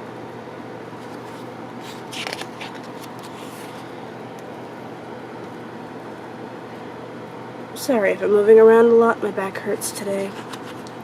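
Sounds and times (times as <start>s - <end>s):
room hum: 0.0s - 11.0s
paper rustling: 1.0s - 3.9s, 10.2s - 11.0s.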